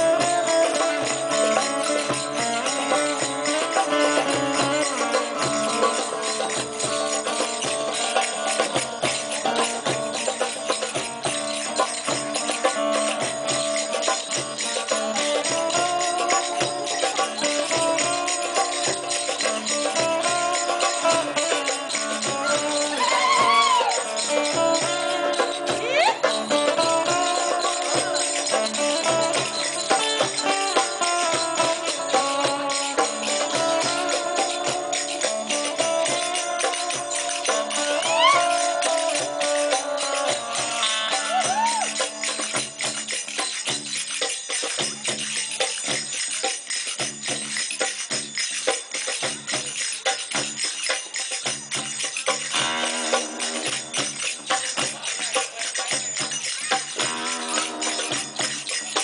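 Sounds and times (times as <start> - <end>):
hand percussion: 0.0 - 59.0
sliding melodic instrument: 0.0 - 59.0
tambourine jingling: 0.0 - 59.0.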